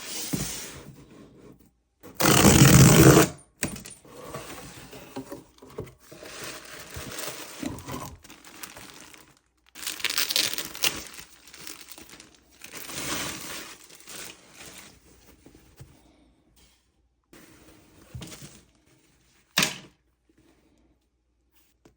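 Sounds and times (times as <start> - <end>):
paper and plastic crinkling: 5.7 - 15.9
packaging ripping: 6.2 - 14.6.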